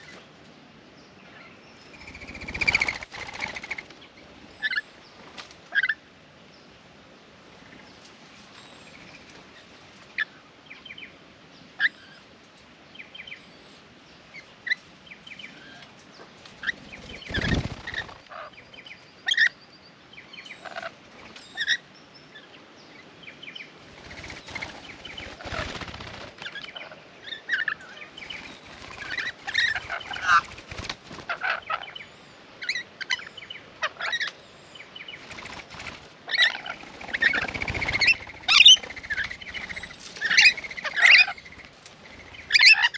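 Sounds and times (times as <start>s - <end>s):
lorikeets chattering and screeching: 1.4s - 5.0s, 16.6s - 19.6s, 23.8s - 34.4s, 35.1s - 42.9s
rustling flurries: 24.0s - 26.5s.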